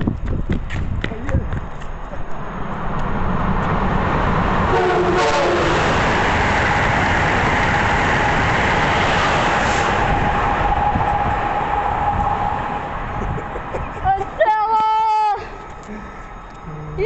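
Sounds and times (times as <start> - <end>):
high-speed train rushing past: 0.0 - 17.0
train horn notes: 4.7 - 6.0
steady high tone: 10.0 - 17.0.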